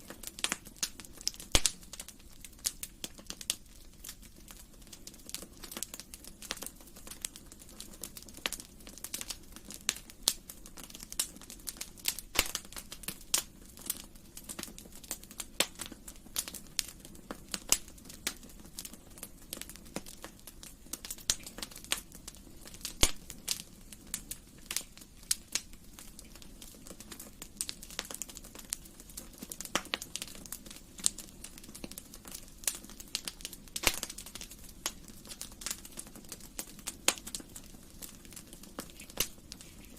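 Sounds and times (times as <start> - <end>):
wood fire crackling: 0.0 - 39.9.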